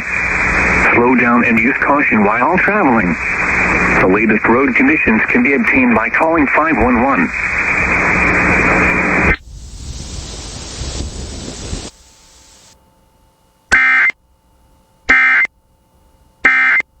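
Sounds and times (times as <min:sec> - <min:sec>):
radio hiss: 0:00.0 - 0:12.8.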